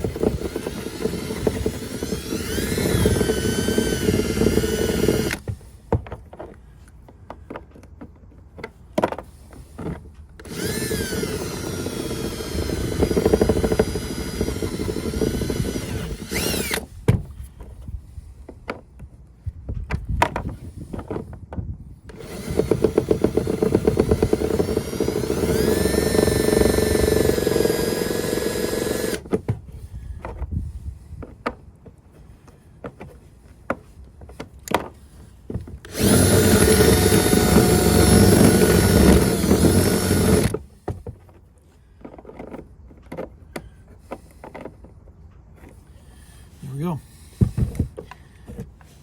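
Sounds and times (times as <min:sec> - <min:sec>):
power drill whining: 0:00.0 - 0:05.4, 0:10.4 - 0:16.9, 0:22.1 - 0:29.4, 0:35.8 - 0:40.7.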